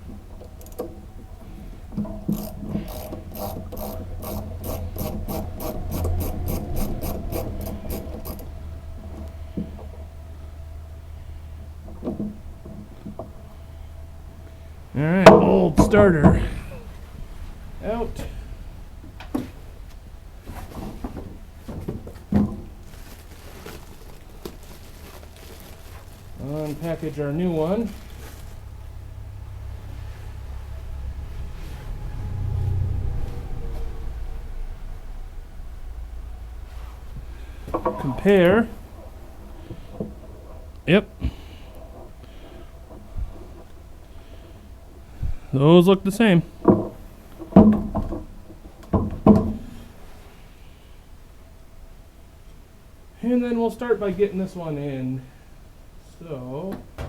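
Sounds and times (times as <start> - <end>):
low steady hum: 0.0 - 56.7
socket ratchet clicking: 2.3 - 8.5.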